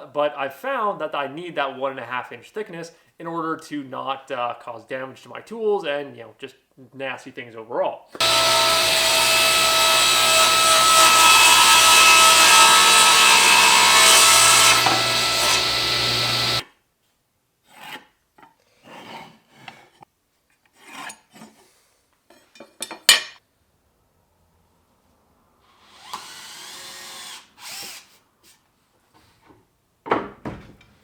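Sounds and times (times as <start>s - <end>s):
power saw cutting wood: 8.2s - 16.6s.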